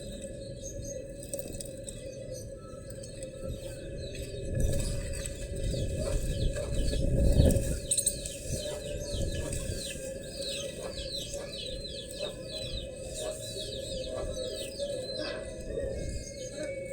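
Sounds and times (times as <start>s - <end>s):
bird chirping: 3.6s - 16.9s.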